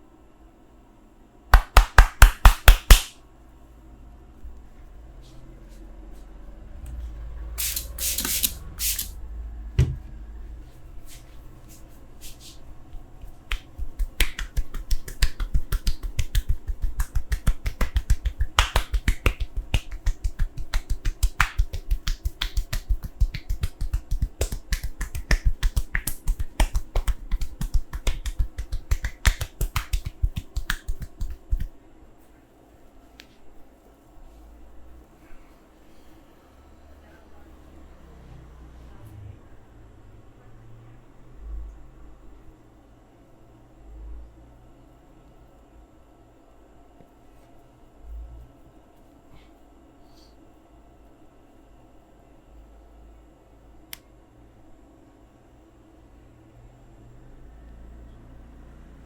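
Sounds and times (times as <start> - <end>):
hands slapping body: 1.6 - 3.2, 13.5 - 31.7
sharp snap-like cracks: 1.6 - 3.2.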